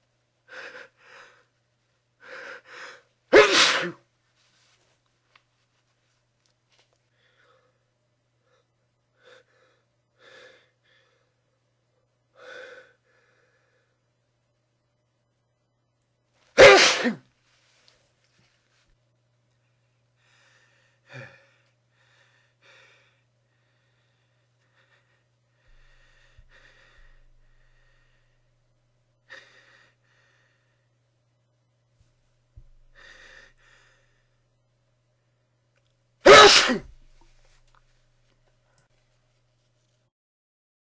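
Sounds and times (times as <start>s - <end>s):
person gasping before sneeze: 3.3s - 4.0s, 16.6s - 17.2s, 36.2s - 37.0s.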